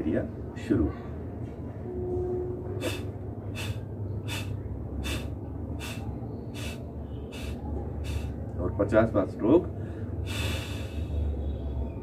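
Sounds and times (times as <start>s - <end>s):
steady low hum: 1.7s - 8.6s
forced nasal exhalations: 2.8s - 8.4s, 10.2s - 11.2s.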